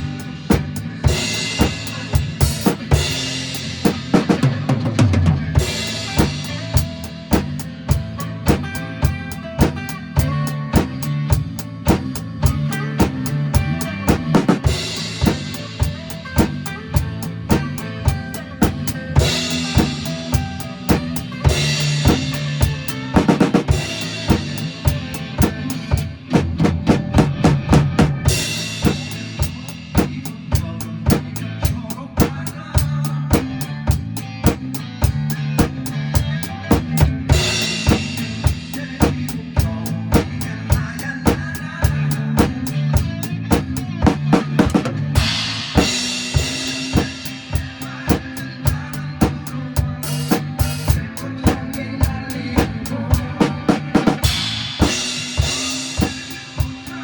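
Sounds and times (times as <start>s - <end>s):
drum kit steady beat: 0.0s - 57.0s
pop backing track: 0.0s - 57.0s
cymbal crashes: 45.2s - 47.9s, 54.2s - 57.0s.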